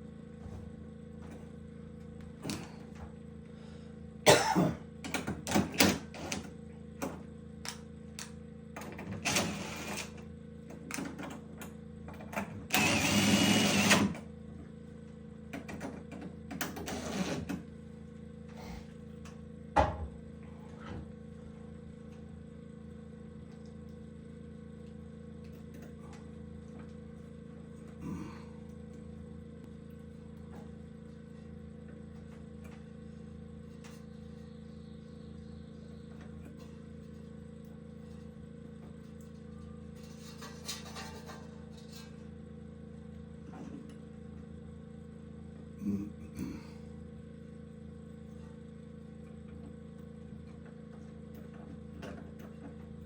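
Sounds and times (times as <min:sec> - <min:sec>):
steady low hum: 0:00.0 - 0:53.0
knocks and clatter of tools: 0:40.0 - 0:42.2.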